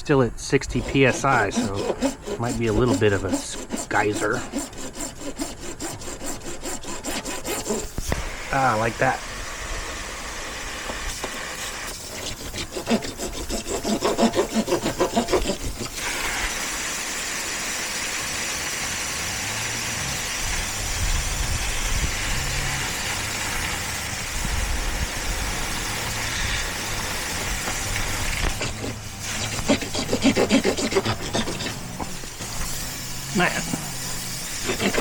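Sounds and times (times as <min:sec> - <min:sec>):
saw cutting plastic pipe: 0:00.0 - 0:35.0
water spraying with a hiss: 0:07.9 - 0:12.4, 0:15.8 - 0:30.1, 0:31.4 - 0:35.0.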